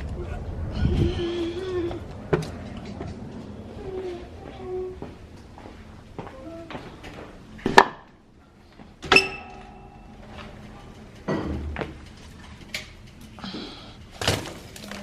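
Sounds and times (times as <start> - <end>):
ringing clink: 9.1 - 10.3.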